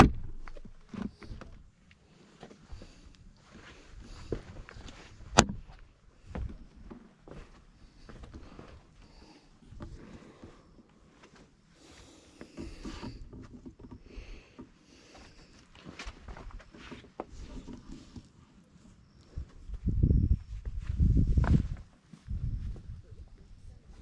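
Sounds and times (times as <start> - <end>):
footsteps on a trail: 0.5 - 13.2, 19.0 - 23.0.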